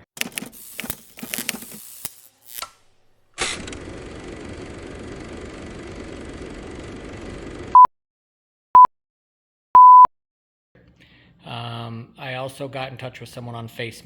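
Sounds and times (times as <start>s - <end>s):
steady low noise: 3.0s - 7.7s.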